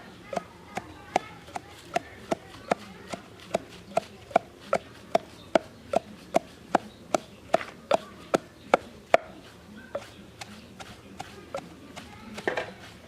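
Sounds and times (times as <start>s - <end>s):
knife chopping on cutting board: 0.8s - 8.0s.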